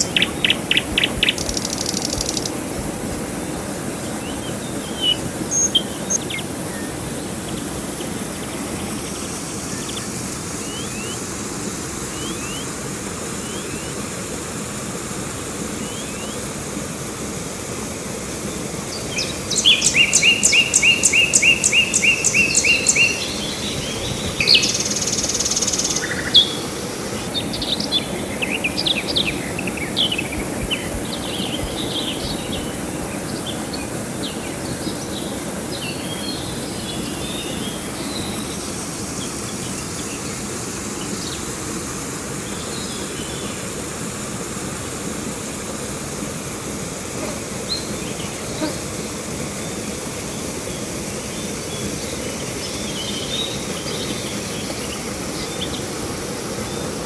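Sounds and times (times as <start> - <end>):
small birds chirping: 0.0 - 11.2, 18.5 - 38.6
river water rushing: 0.0 - 57.0.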